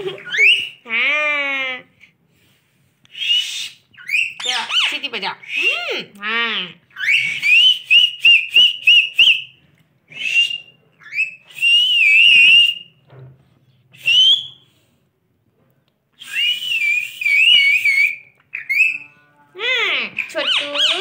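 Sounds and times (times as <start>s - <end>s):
parrot whistling: 0.1s - 0.8s, 3.1s - 5.8s, 6.9s - 9.5s, 10.1s - 12.9s, 14.0s - 14.6s, 16.2s - 19.2s, 20.2s - 21.0s.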